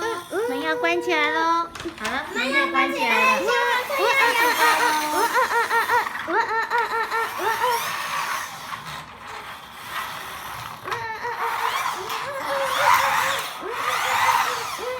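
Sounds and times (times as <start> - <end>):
young child giggling: 4.3 - 7.8.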